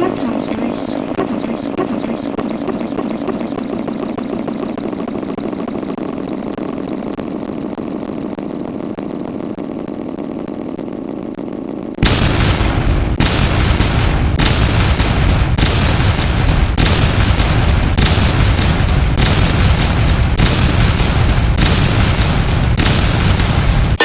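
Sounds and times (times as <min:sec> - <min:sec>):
flickering distorted buzz: 0:00.0 - 0:24.0
harsh crackling noise with bass: 0:00.0 - 0:24.0.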